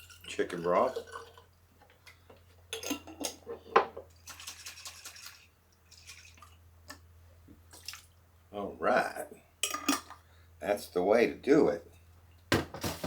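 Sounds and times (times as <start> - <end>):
glass jar clinking: 0.0 - 1.5, 2.7 - 4.0, 9.6 - 10.2
liquid sloshing in a jar: 0.0 - 6.6, 7.7 - 8.1.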